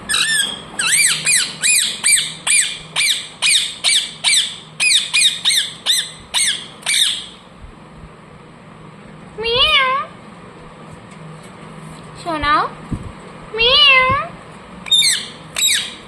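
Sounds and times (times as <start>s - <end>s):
parrot calling: 0.0s - 7.4s, 14.9s - 16.0s.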